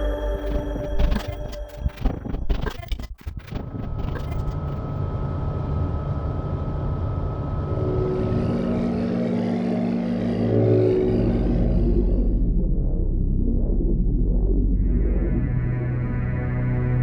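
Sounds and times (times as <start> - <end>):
synthesized grinding drone: 0.0 - 17.0.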